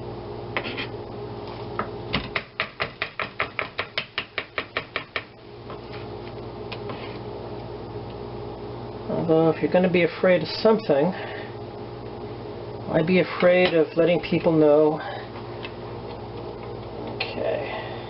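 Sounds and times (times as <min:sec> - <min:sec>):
knife chopping on cutting board: 0:02.2 - 0:05.3.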